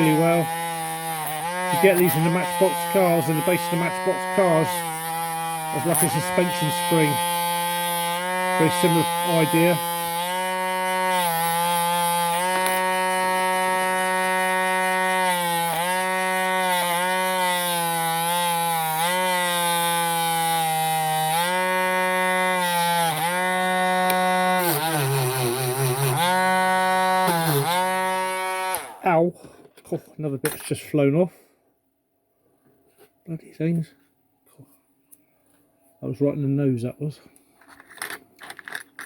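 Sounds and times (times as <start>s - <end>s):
high-speed rotary tool polishing metal: 0.0s - 29.0s.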